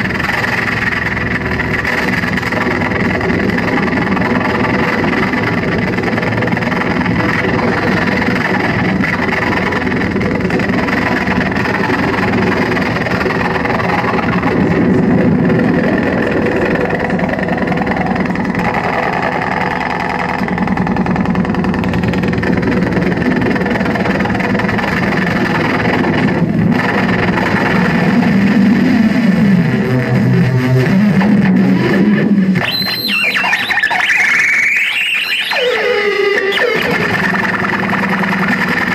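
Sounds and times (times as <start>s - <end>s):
distorted electronic noise drone: 0.0s - 38.9s
guitar-like drone through effects: 0.0s - 38.9s
squealing tones sweeping in pitch: 30.0s - 37.8s.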